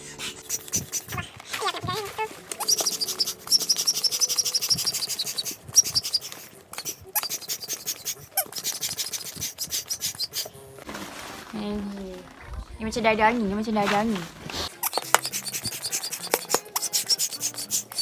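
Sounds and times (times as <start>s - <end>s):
hand air pump squeaking: 0.0s - 10.6s, 14.5s - 18.0s.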